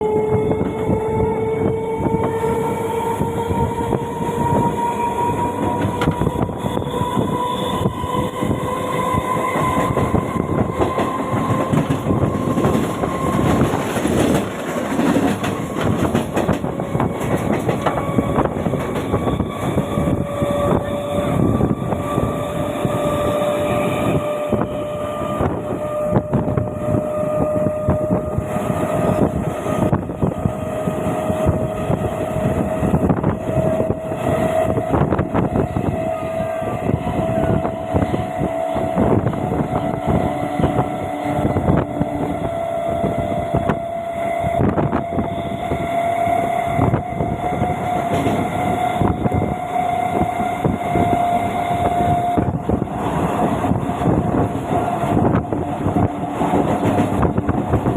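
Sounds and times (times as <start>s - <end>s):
train rumbling and clattering: 0.0s - 57.9s
train whine rising in pitch: 0.0s - 57.9s.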